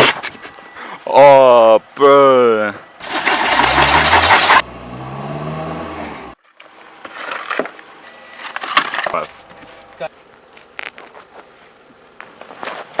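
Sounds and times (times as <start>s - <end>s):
car engine revving: 3.0s - 6.4s.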